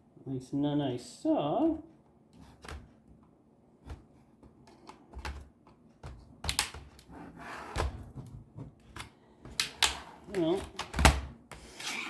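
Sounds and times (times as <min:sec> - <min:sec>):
short scrape: 0:11.6 - 0:12.0.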